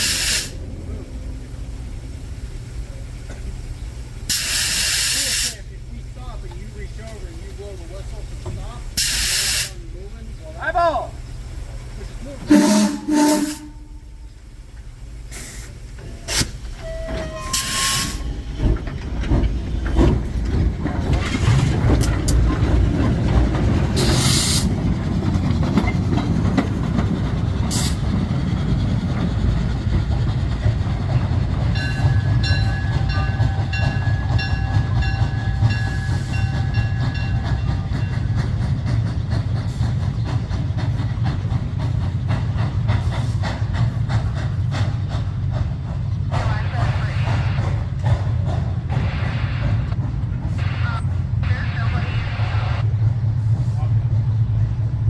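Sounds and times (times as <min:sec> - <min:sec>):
short hissing: 0:00.0 - 0:00.6, 0:03.2 - 0:05.7, 0:08.8 - 0:09.8, 0:15.3 - 0:16.8, 0:17.5 - 0:18.3
train rumbling: 0:00.0 - 0:55.0.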